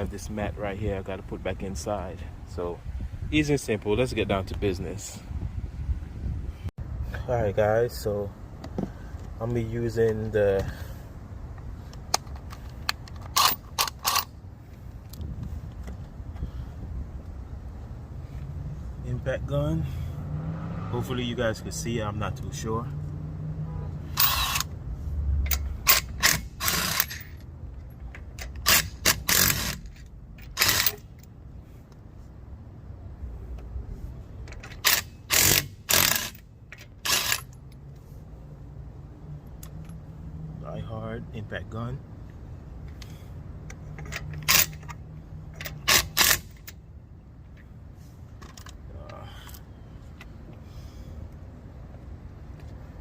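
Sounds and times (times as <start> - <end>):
impact wrench hammering rattle: 25.5 - 27.4, 28.2 - 31.2, 34.6 - 37.6, 43.9 - 46.7.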